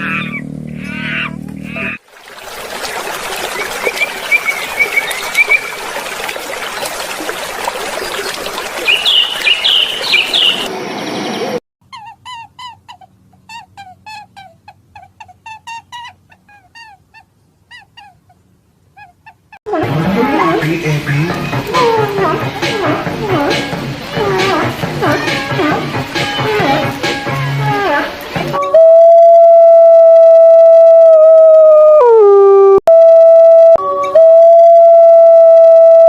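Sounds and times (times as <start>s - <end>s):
birds chirping: 2.8s - 28.5s
short pitched bird calls: 8.1s - 10.7s.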